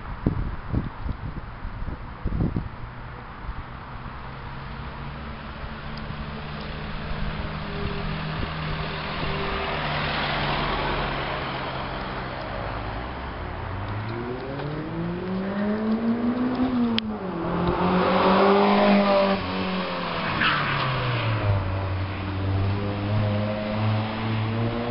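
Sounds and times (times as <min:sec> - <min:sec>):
car engine revving: 0:13.6 - 0:24.9.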